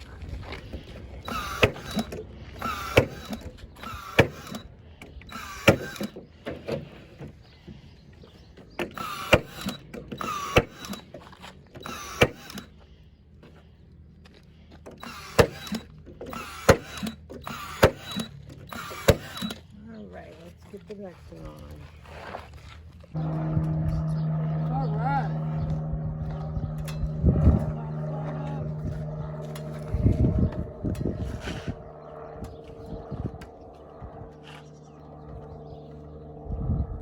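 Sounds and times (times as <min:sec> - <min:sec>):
power drill driving screws: 0:00.7 - 0:06.8, 0:08.7 - 0:12.8, 0:14.9 - 0:19.7
drill clutch click: 0:01.1 - 0:06.3, 0:08.7 - 0:11.2, 0:11.8 - 0:12.8, 0:14.9 - 0:19.7.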